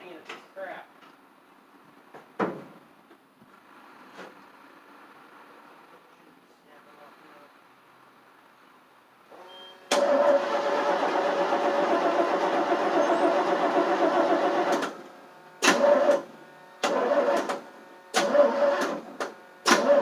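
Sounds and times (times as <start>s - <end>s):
engine cranking on starter: 9.8s - 20.0s.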